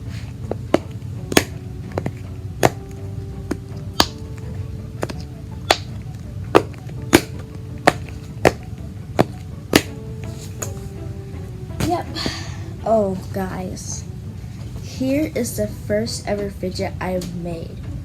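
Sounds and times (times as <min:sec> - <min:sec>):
background music: 0:00.0 - 0:18.0
fidget toy popping: 0:00.5 - 0:10.0.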